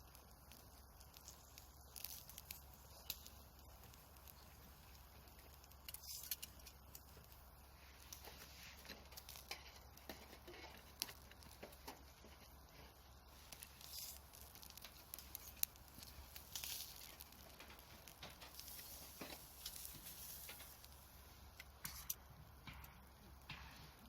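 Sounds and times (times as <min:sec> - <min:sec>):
campfire crackling: 0:00.0 - 0:24.0
fire hissing: 0:00.0 - 0:24.0
small pops of fire: 0:00.0 - 0:24.0.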